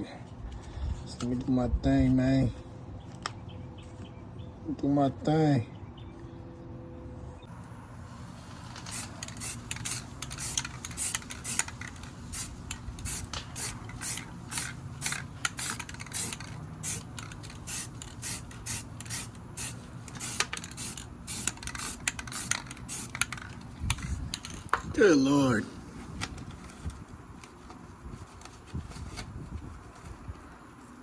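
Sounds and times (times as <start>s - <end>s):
spray paint can hissing: 8.4s - 23.4s
wind rumbling on microphone: 23.6s - 25.0s, 25.8s - 31.0s.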